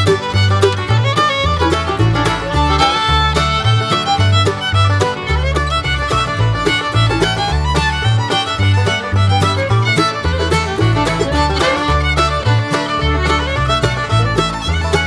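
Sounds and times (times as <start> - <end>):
bouncing bass line: 0.0 - 15.0
upbeat fiddle tune: 0.0 - 15.0.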